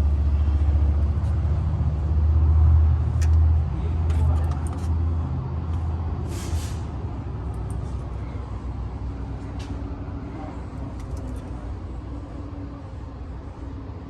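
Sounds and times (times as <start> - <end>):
vehicle engine rumbling: 0.0 - 14.0
short hiss burst: 6.3 - 6.9.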